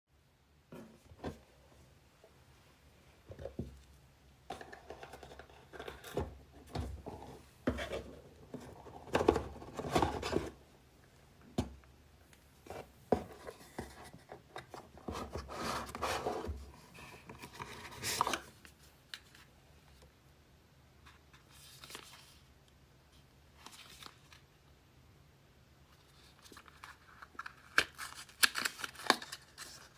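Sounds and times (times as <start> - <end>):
paper packaging rustling: 21.4 - 22.4, 23.6 - 24.4, 26.0 - 29.9.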